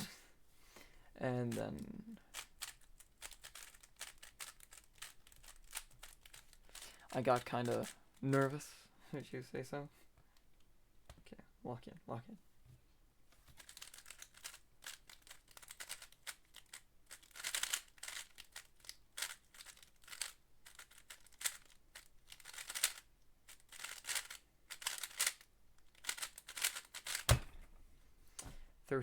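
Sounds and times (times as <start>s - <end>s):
puzzle cube layers clacking: 2.3s - 6.6s, 7.6s - 8.5s, 13.6s - 27.7s.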